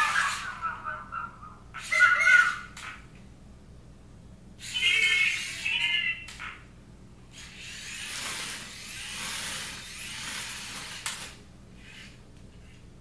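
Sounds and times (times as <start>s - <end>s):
toy rover whirring hiss: 7.3s - 12.8s.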